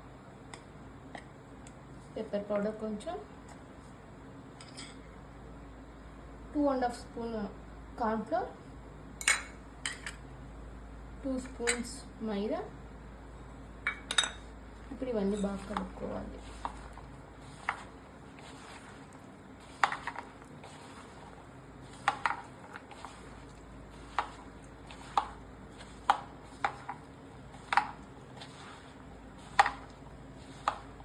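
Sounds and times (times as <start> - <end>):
spoon clinking against bowl: 13.9 - 14.4.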